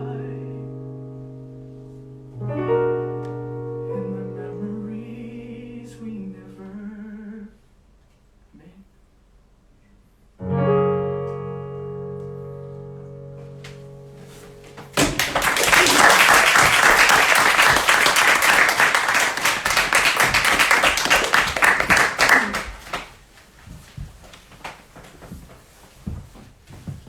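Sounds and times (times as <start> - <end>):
audience applause: 15.0 - 23.1.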